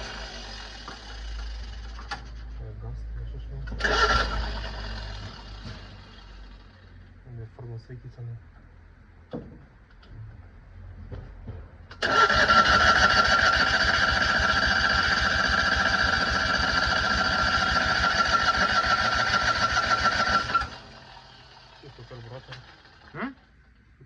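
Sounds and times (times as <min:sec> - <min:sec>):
engine starter cranking: 0:03.6 - 0:06.7, 0:11.9 - 0:23.5.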